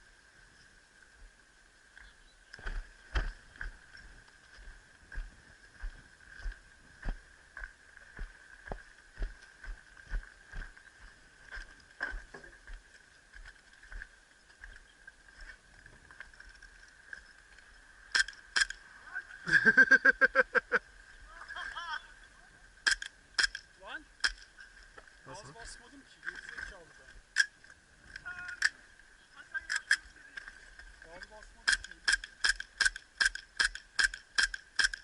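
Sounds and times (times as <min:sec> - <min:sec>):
footsteps walking: 0:02.6 - 0:17.3
sharp clicks: 0:18.1 - 0:18.8, 0:22.8 - 0:24.6, 0:31.6 - 0:35.0.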